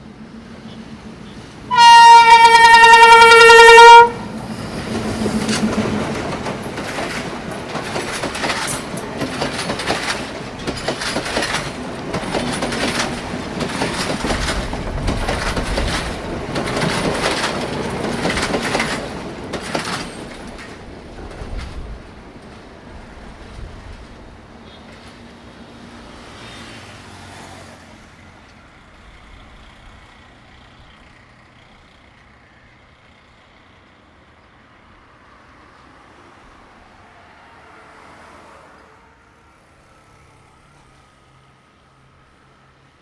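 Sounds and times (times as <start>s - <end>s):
train horn: 0.7s - 4.5s
train wheels clattering: 1.8s - 24.1s.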